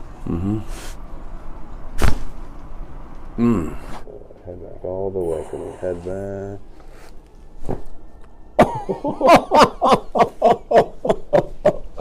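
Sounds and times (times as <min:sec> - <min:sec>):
man laughing: 0:08.6 - 0:12.0.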